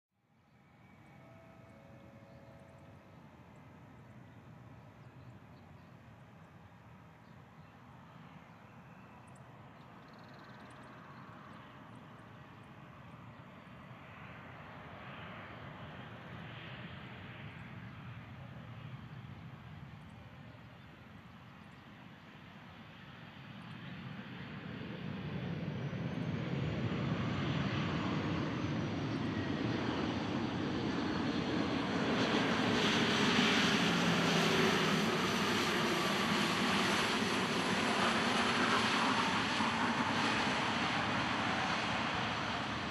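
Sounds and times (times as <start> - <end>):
jet engine whine falling in pitch: 0.4 - 6.6, 22.8 - 42.9
jet engines roaring: 22.8 - 42.9.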